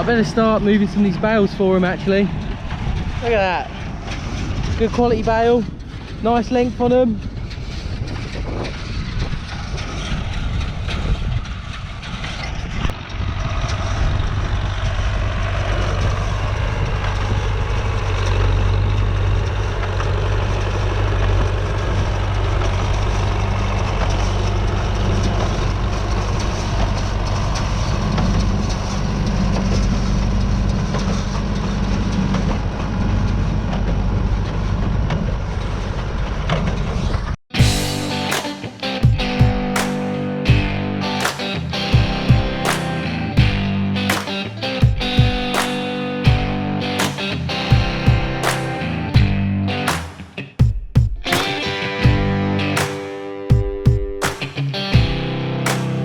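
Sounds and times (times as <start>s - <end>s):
hay baler working: 0.0s - 35.4s
tractor engine running under load: 0.0s - 38.5s.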